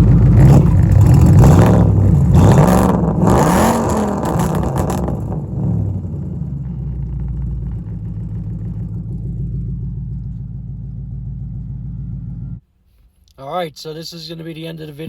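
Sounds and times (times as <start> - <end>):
car engine revving and idling: 0.0 - 12.6.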